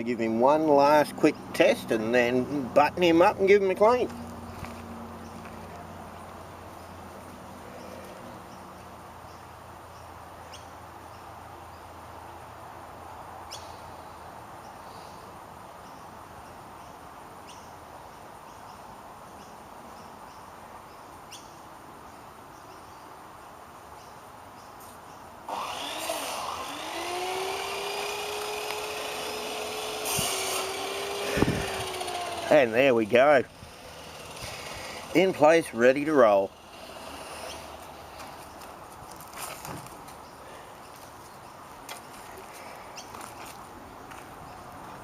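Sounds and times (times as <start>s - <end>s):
faint background noise: 0.0s - 25.5s
cordless power driver whirring: 25.5s - 32.6s, 33.5s - 35.2s.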